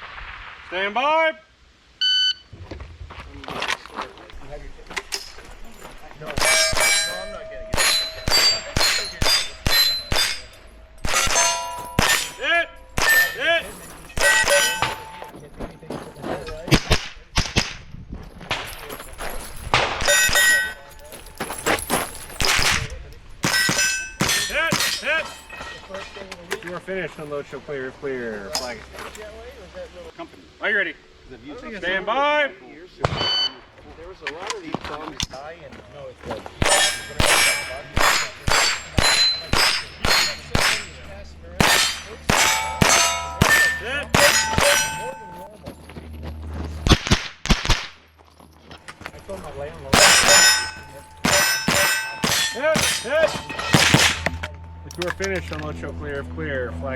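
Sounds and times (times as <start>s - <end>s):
steel targets clanging: 4.9s - 16.7s, 18.5s - 26.7s, 36.6s - 45.6s, 48.5s - 55.8s
rifle shots: 41.6s - 45.2s.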